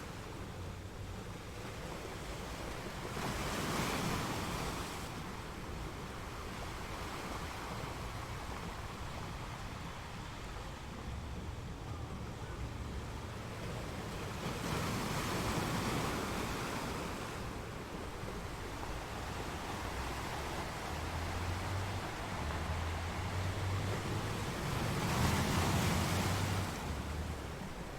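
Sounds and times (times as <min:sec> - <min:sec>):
waves breaking on rocks: 0:13.4 - 0:27.9.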